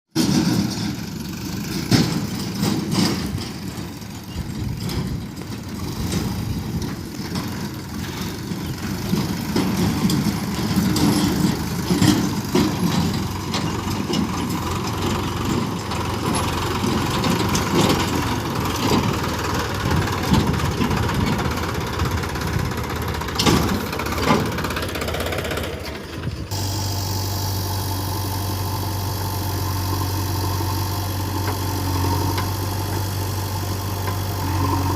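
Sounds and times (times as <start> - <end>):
sharp knocks and clatters: 0.2 - 26.0
diesel engines running: 0.2 - 34.9
steady engine hum: 0.2 - 34.9.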